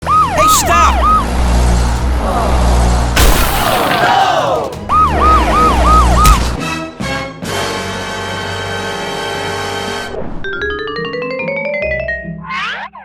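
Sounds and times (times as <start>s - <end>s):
siren yelping: 0.0s - 1.8s, 4.1s - 6.6s.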